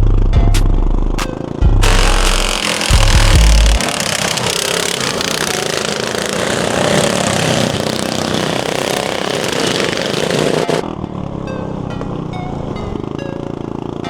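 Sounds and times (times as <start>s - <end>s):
racing lawn mower engines: 1.4s - 11.3s, 12.6s - 14.0s.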